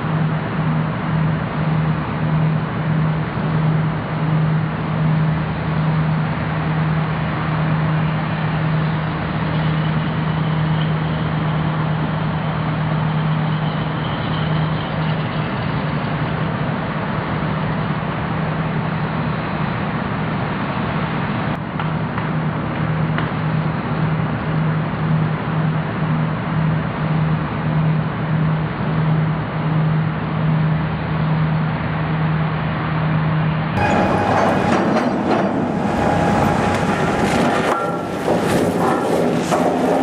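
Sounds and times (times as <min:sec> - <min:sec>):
boat engine droning: 0:33.8 - 0:40.0
constant rushing noise: 0:33.8 - 0:40.0.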